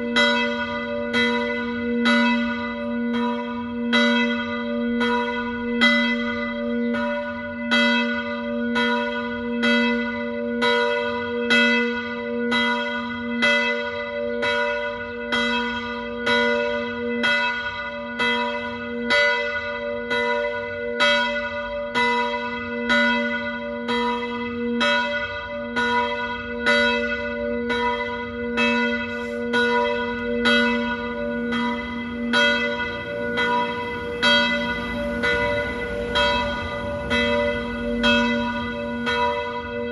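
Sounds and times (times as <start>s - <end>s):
church bells ringing a peal: 0.0s - 39.9s.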